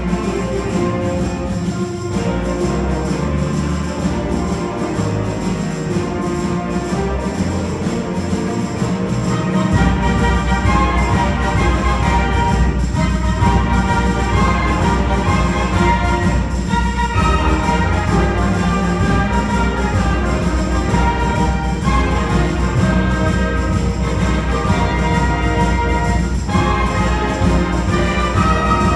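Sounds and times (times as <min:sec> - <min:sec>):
concert band playing: 0:00.0 - 0:28.9.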